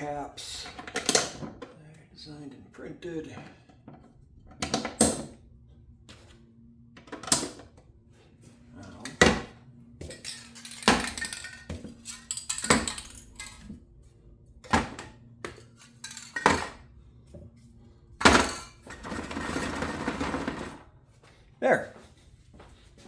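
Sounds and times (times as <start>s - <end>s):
plastic parts clacking and knocking: 10.1s - 13.8s.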